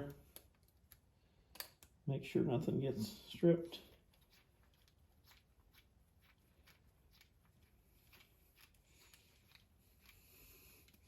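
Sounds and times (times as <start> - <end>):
screwdriver turning small screw clicks: 0.0 - 1.9.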